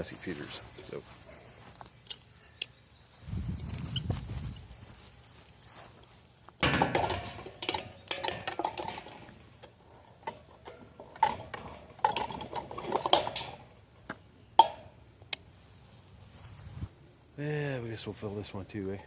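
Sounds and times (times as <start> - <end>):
bird feeder clattering: 6.6 - 13.8.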